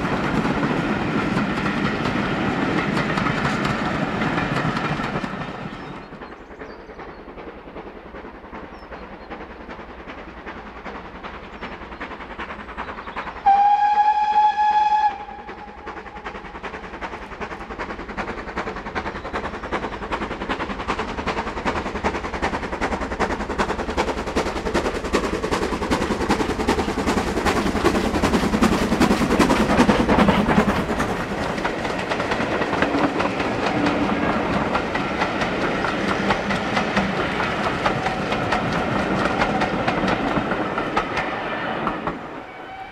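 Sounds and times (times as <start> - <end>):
train running past: 0.0 - 42.9
steam locomotive whistle: 13.4 - 16.2, 41.2 - 42.9.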